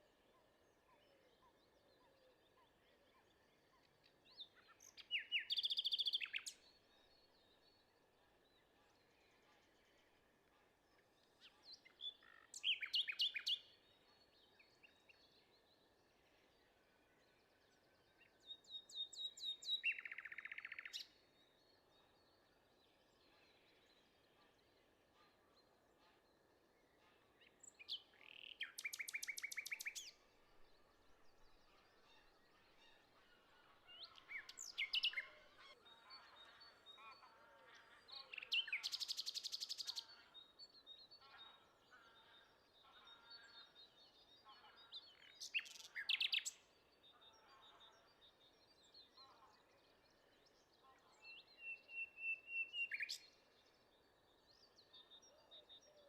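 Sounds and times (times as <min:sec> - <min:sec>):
songbird singing trills: 0:00.0 - 0:08.0, 0:11.0 - 0:24.3, 0:27.0 - 0:33.2, 0:33.9 - 0:56.0.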